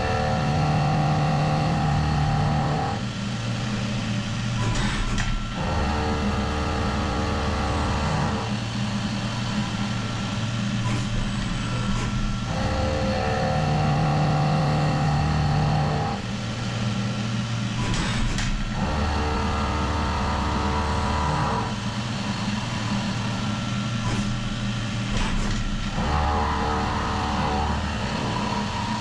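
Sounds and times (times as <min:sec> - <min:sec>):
steady machine noise: 0:00.0 - 0:29.0
pitched milling cutting tone: 0:11.3 - 0:16.6, 0:18.8 - 0:24.0, 0:25.9 - 0:29.0.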